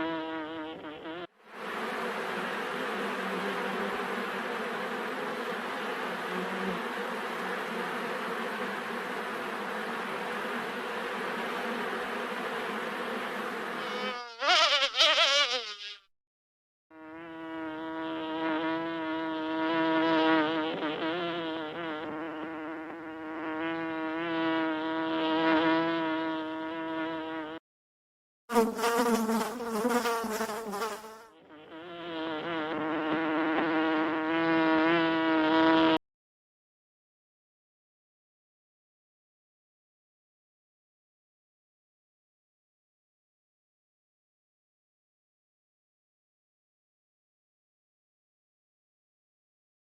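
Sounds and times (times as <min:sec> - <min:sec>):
bees buzzing: 0:00.0 - 0:16.0, 0:28.5 - 0:36.0.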